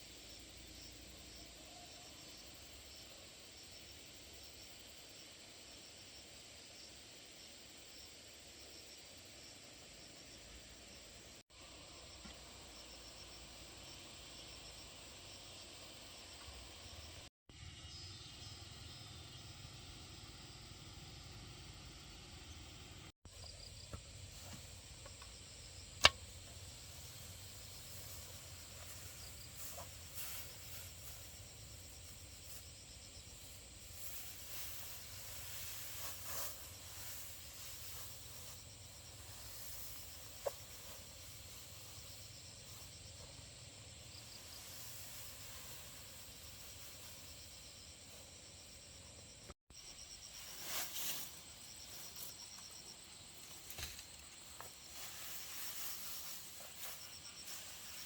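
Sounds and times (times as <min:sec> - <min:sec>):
insects chirping: 0:00.0 - 0:58.0
sharp click: 0:26.0 - 0:26.3.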